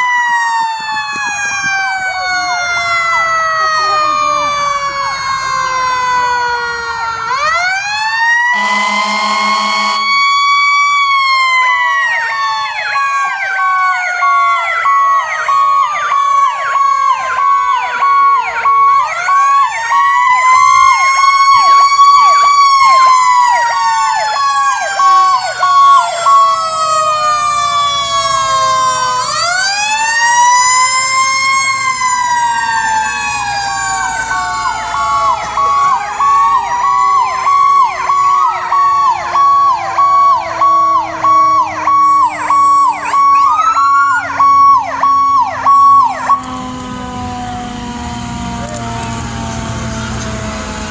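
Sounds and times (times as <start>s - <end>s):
electronic sirens yelping: 0.0s - 50.9s
pulsing steady siren tone: 0.0s - 50.9s
air horn blast: 8.5s - 10.4s, 25.0s - 26.4s.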